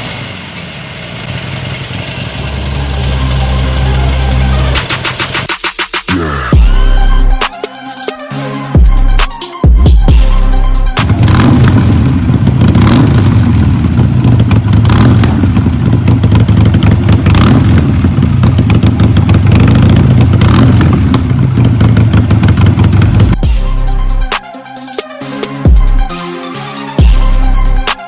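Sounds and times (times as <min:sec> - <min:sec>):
motorcycle engine running: 0:00.0 - 0:07.5, 0:08.3 - 0:24.4, 0:27.0 - 0:28.0
motorcycle throttle blips: 0:11.0 - 0:23.4.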